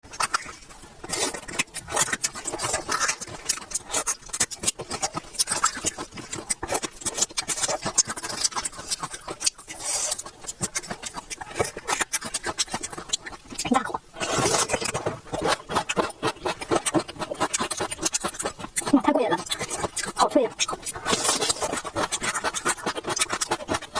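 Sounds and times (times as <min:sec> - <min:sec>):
person chewing crispy food: 0:00.0 - 0:23.9.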